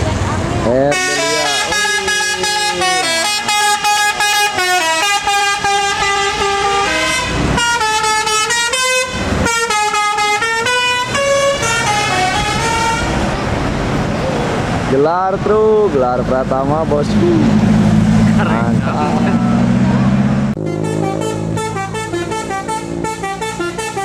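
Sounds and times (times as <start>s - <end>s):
bus engine rumble: 0.0s - 24.0s
road noise: 0.0s - 24.0s
musical air horn melody: 0.9s - 13.4s, 20.6s - 24.0s.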